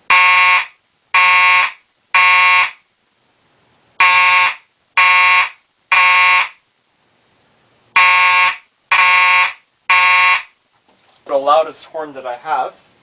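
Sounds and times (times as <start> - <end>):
fire alarm horn blasts: 0.1 - 2.8, 4.0 - 6.6, 8.0 - 10.5.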